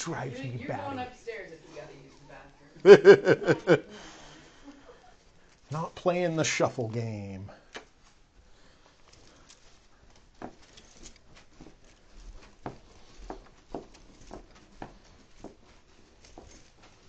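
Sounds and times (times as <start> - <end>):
soft footsteps: 0.0 - 17.0.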